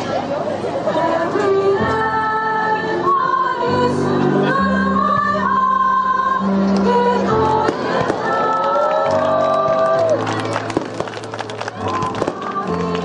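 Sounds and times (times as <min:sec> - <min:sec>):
choir singing held chords: 0:00.8 - 0:09.8.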